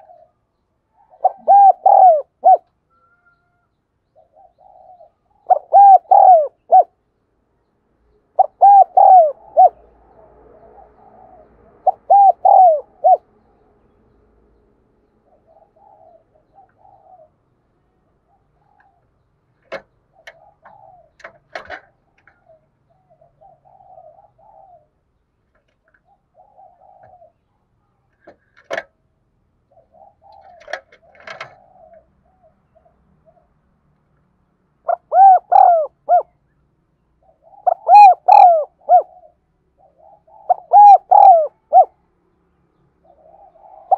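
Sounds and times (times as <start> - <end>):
dove cooing: 0.0 - 7.0, 8.3 - 13.3, 15.2 - 17.5, 18.2 - 27.6, 29.6 - 33.6, 34.8 - 36.4, 37.2 - 42.0, 43.0 - 43.9.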